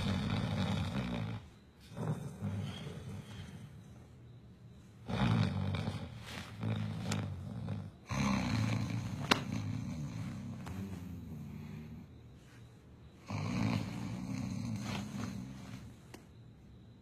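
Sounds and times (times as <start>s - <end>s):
man snoring loudly: 0.0s - 3.5s, 5.0s - 12.0s, 13.2s - 15.6s.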